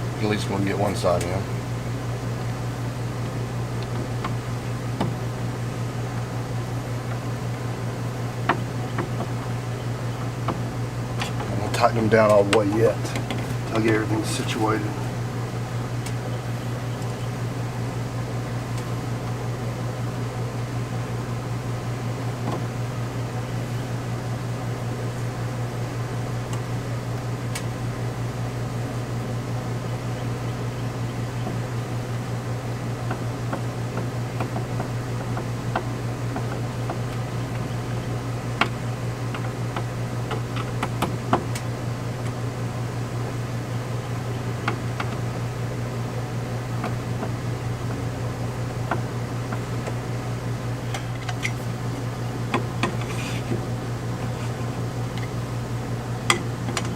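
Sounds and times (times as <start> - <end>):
low mechanical hum: 0.0 - 56.9.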